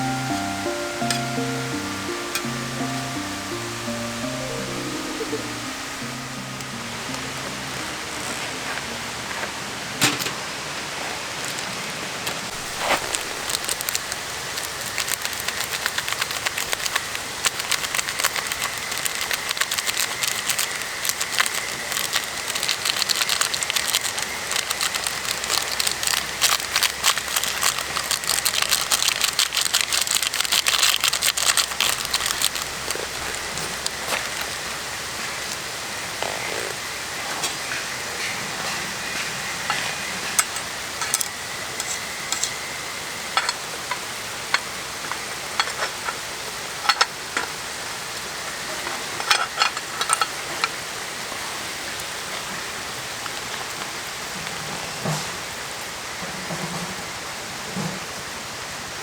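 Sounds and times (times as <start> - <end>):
food sizzling in a hot pan: 12.5 - 33.1.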